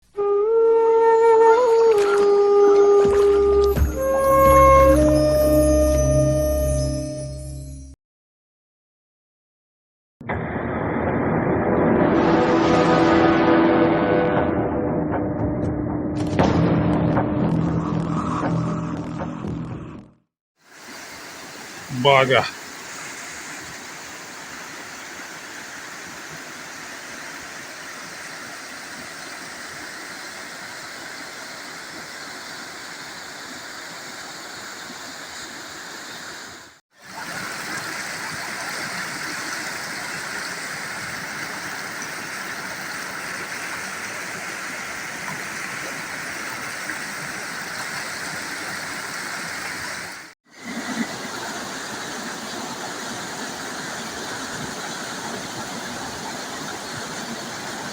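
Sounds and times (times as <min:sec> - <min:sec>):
waterfall rushing: 0:20.7 - 0:24.4.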